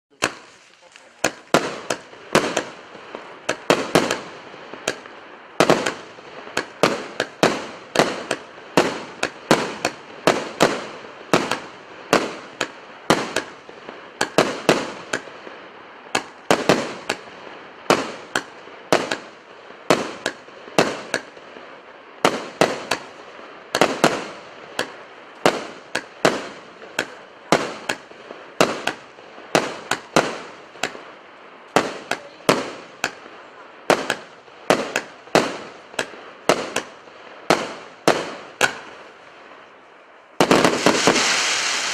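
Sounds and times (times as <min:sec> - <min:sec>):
firework bangs with echo: 0:00.2 - 0:00.6, 0:01.2 - 0:39.2, 0:40.4 - 0:41.9.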